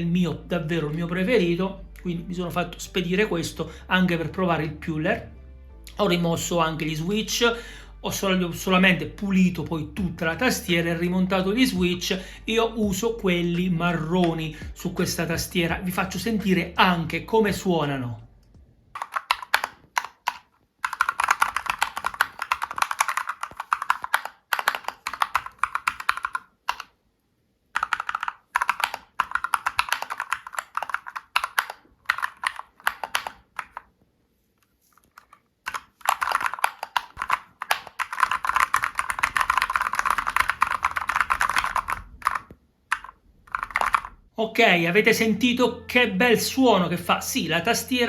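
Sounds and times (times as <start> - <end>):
mechanical keyboard typing: 18.9 - 27.0, 27.7 - 33.9, 35.1 - 44.2.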